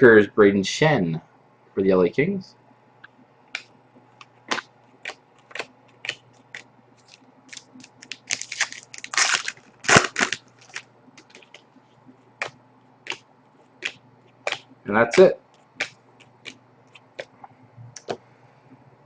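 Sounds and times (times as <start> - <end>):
crackling card handling: 4.2 - 11.7
trading cards snapping: 4.5 - 11.6, 12.4 - 13.2, 13.8 - 17.3.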